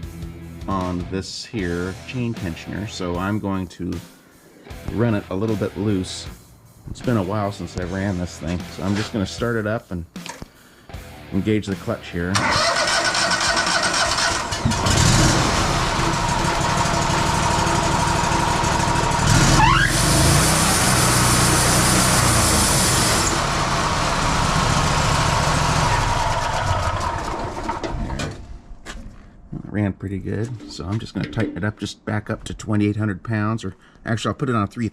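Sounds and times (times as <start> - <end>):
band sawmill running: 12.4 - 27.9.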